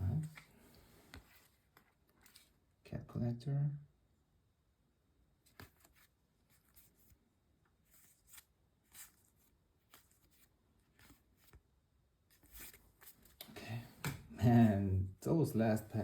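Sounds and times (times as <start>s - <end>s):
trading cards rustling and clicking: 0.0s - 2.6s, 5.4s - 7.2s, 7.8s - 11.6s, 12.3s - 14.3s.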